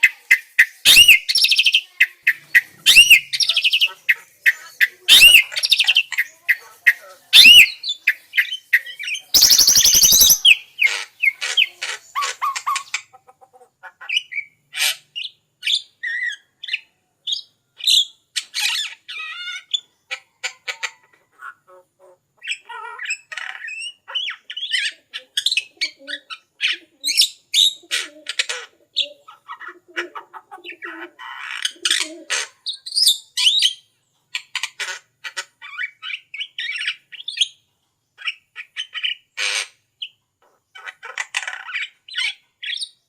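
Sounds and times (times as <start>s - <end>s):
birds whistling and chirping: 0.0s - 13.1s, 14.1s - 20.0s, 22.4s - 27.9s, 30.6s - 34.0s, 35.6s - 37.6s, 41.4s - 43.0s.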